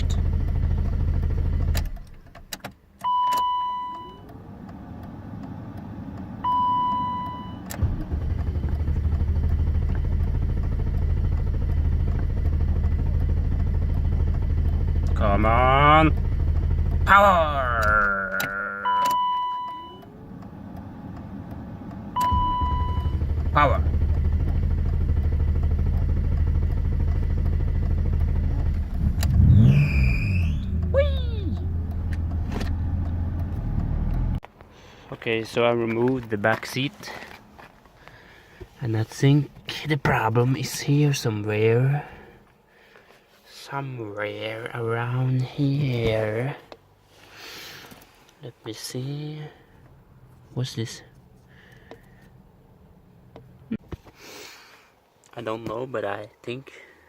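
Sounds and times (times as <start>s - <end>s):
engine cranking on starter: 0.0s - 2.6s, 7.6s - 18.1s, 20.6s - 34.4s
clicks: 17.8s - 22.4s, 30.4s - 34.7s.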